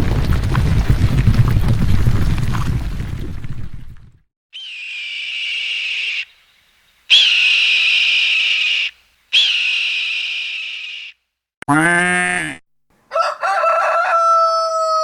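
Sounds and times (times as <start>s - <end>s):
high-pitched whistle blasts: 4.6s - 6.3s, 7.1s - 11.2s.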